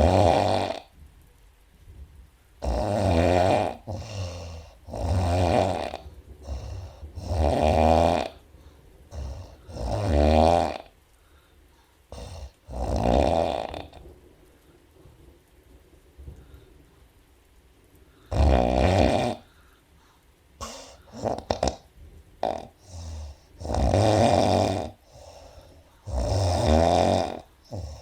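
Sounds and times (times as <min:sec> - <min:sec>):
woman snoring: 0:00.0 - 0:00.9, 0:02.6 - 0:08.4, 0:09.1 - 0:10.9, 0:12.1 - 0:14.0, 0:18.3 - 0:19.5, 0:20.6 - 0:28.0
quiet breaths: 0:00.0 - 0:28.0.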